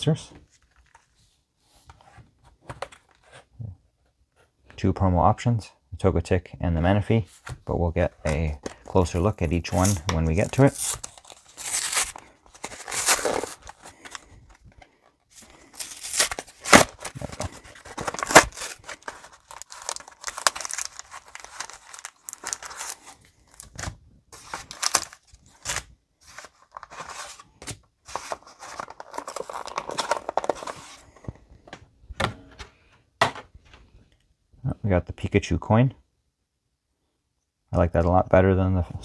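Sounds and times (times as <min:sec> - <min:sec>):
blister pack tearing and crinkling: 0:08.8 - 0:14.6, 0:15.4 - 0:27.4, 0:28.1 - 0:31.0.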